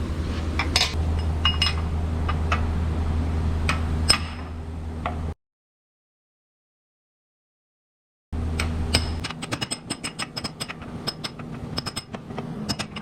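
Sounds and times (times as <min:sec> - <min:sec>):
low hum: 0:00.0 - 0:05.3.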